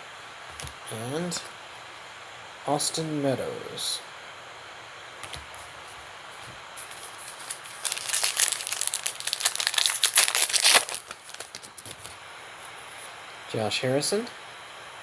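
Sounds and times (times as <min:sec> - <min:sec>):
card pack wrapper crinkling and tearing: 0:06.8 - 0:12.2.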